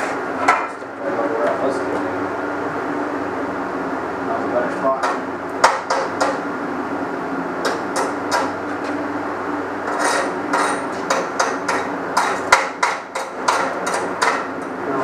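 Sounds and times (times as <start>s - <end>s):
steady hum: 0.0s - 15.0s
hammer tapping metal: 5.0s - 6.4s, 7.6s - 8.6s, 10.0s - 14.6s.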